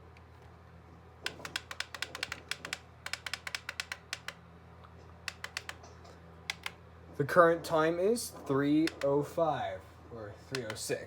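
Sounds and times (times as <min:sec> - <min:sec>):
steady low hum: 0:00.0 - 0:11.0
plastic buttons clicking: 0:01.3 - 0:04.4, 0:05.3 - 0:05.9, 0:06.5 - 0:06.8, 0:08.8 - 0:09.2, 0:10.5 - 0:11.0.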